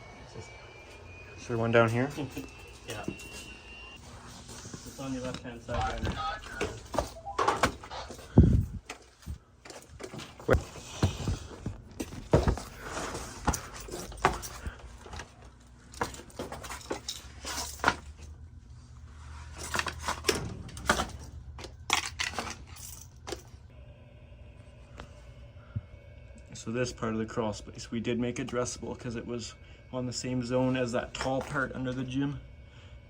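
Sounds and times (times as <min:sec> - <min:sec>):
knocks and scrapes of handling things: 0:06.8 - 0:18.2.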